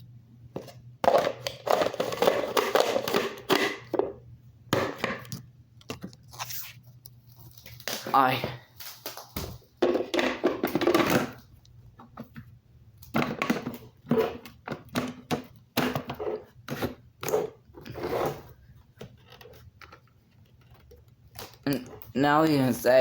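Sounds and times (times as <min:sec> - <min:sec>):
rustles and plastic clatters: 0:05.2 - 0:22.1.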